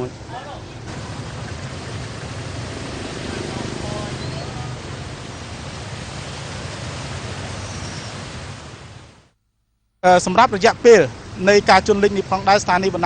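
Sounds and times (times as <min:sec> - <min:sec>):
steady rushing noise: 0:00.9 - 0:09.3.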